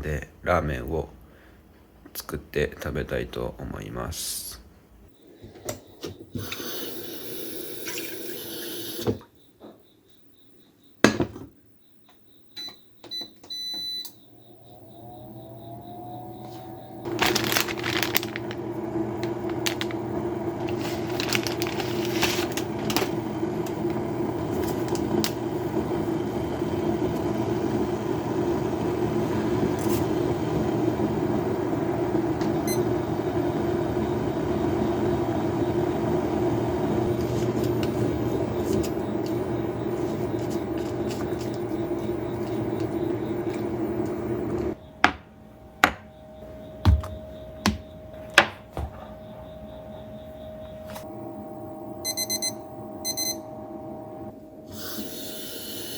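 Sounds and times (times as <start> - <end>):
steady mechanical hum: 12.6 - 55.9.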